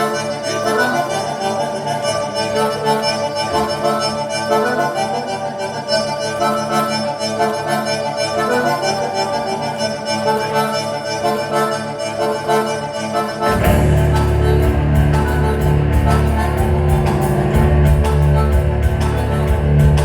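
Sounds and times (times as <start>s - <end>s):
squeezebox chords: 0.0s - 20.0s
rock band playing: 13.4s - 20.0s.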